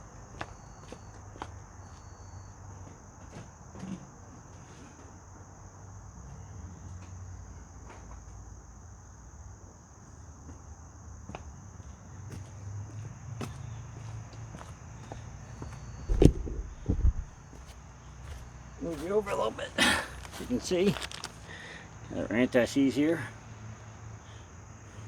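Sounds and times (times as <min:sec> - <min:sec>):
insects chirring: 0:00.0 - 0:25.0
faint low rumble: 0:16.1 - 0:17.4.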